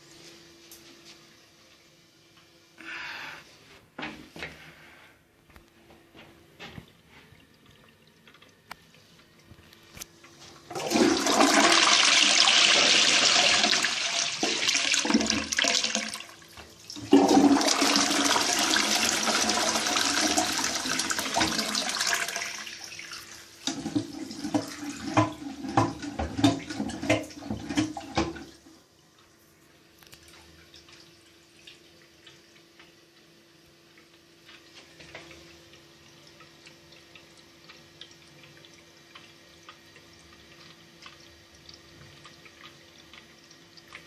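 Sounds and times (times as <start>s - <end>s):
toilet flushing: 10.4s - 29.0s.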